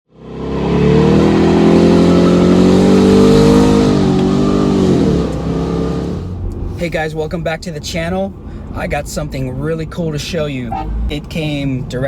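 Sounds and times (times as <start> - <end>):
car engine running hard: 0.1 - 7.0.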